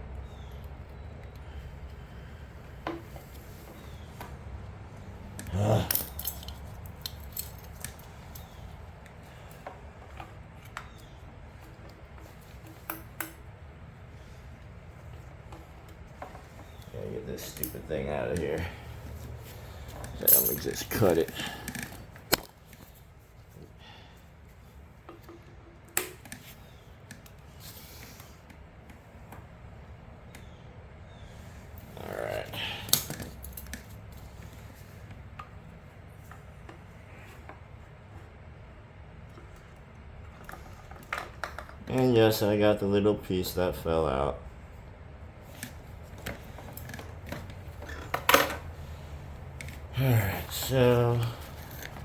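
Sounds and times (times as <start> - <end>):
small metal tools clinking: 5.4 - 8.6, 20.0 - 22.5
metal parts clattering: 5.6 - 8.5, 20.0 - 22.5.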